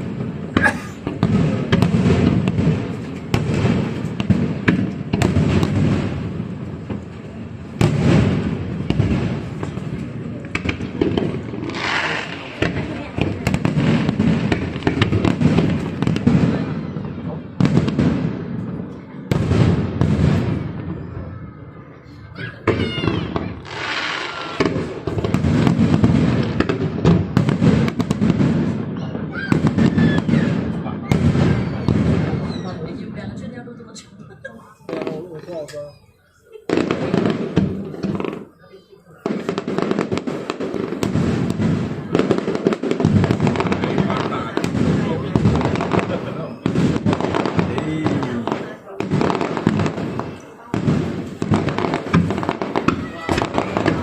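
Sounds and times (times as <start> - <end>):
fireworks bangs with rumbling echo: 0.0 - 54.0
fireworks crackles: 0.0 - 54.0
faint firework whistle: 29.3 - 33.0.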